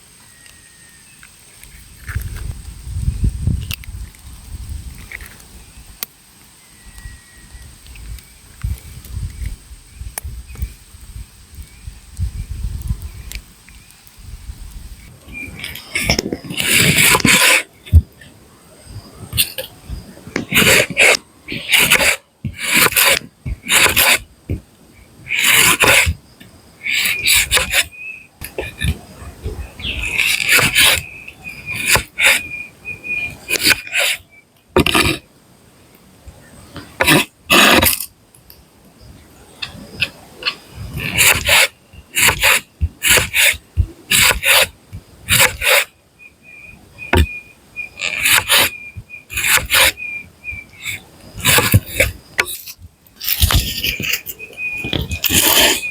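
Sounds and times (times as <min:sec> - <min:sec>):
tool rasping on wood: 0:15.7 - 0:17.7, 0:20.4 - 0:24.3, 0:25.3 - 0:26.2, 0:26.9 - 0:29.0, 0:30.0 - 0:31.1, 0:31.7 - 0:32.4, 0:33.5 - 0:34.2, 0:41.0 - 0:45.9, 0:48.0 - 0:48.7, 0:49.3 - 0:50.0, 0:50.8 - 0:54.3, 0:55.0 - 0:55.9.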